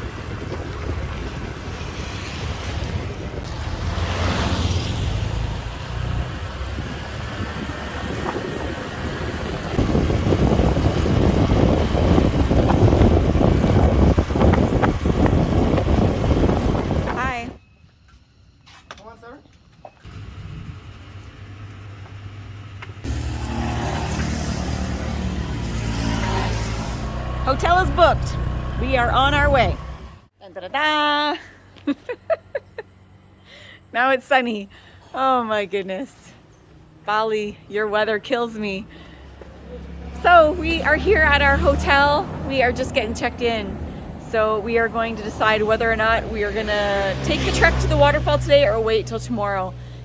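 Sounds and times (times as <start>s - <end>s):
wind buffeting microphone: 0.0s - 4.3s, 5.1s - 17.6s
wind and road noise: 0.0s - 50.0s
motor scooter running: 5.2s - 17.5s, 20.1s - 30.2s.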